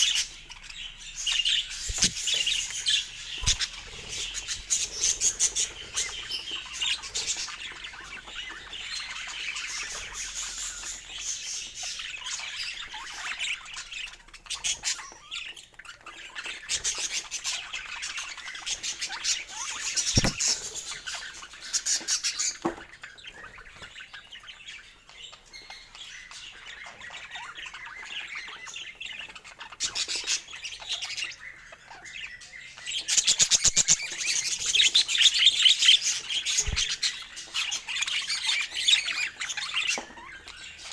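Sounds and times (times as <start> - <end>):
budgerigars chattering: 0.0 - 40.9
sharp tap: 20.2 - 20.6.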